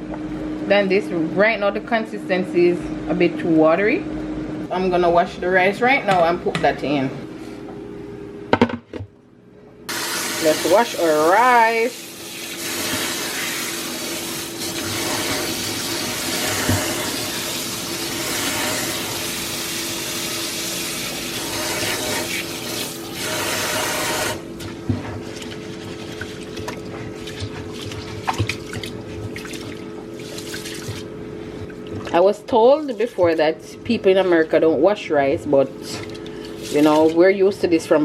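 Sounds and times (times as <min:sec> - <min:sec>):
steady hum: 0:00.0 - 0:20.0, 0:21.3 - 0:38.0
tap running water: 0:09.9 - 0:33.6, 0:36.0 - 0:37.2.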